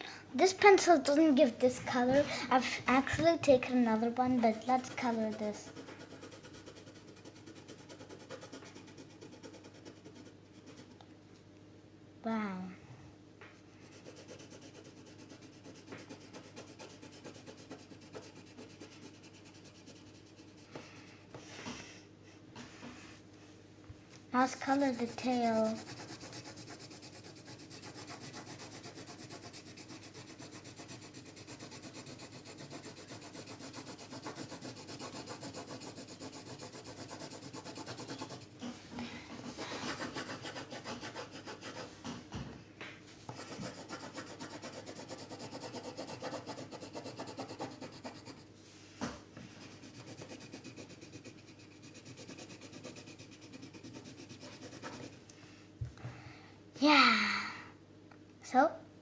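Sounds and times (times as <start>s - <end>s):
pencil scratching on paper: 4.4s - 11.0s, 13.8s - 20.9s, 24.4s - 38.8s, 39.4s - 42.1s, 43.3s - 48.5s, 49.5s - 55.2s.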